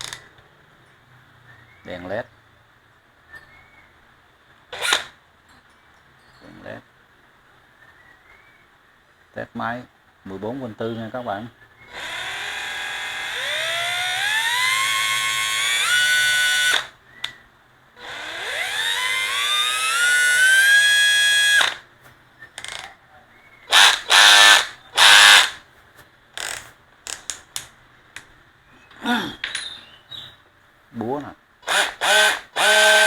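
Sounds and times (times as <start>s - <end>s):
drill clicks: 4.7s - 5.1s, 11.9s - 17.4s, 18.0s - 21.8s, 23.7s - 25.6s, 31.6s - 33.0s
rough drill bursts: 4.7s - 5.1s, 11.9s - 16.9s, 18.0s - 21.8s, 23.7s - 25.6s, 31.6s - 33.0s
cordless drill motor whine: 11.9s - 16.9s, 18.0s - 21.8s, 23.7s - 25.6s, 31.6s - 33.0s.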